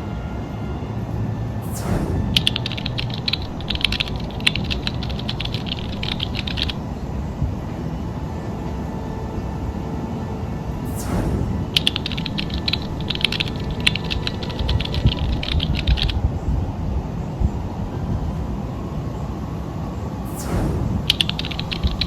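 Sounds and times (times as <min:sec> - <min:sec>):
steady low rumble: 0:00.0 - 0:22.0
falling whoosh: 0:01.6 - 0:08.0, 0:10.7 - 0:16.3, 0:20.2 - 0:22.0
rapid clicking: 0:11.8 - 0:16.2.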